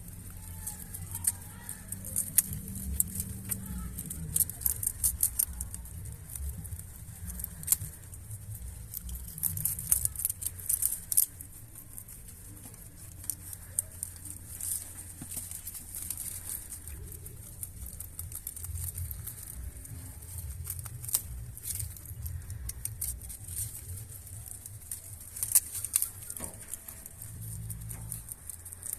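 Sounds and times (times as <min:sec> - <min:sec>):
low rumble: 0:00.0 - 0:28.9
rabbits chewing leaves: 0:00.0 - 0:28.9.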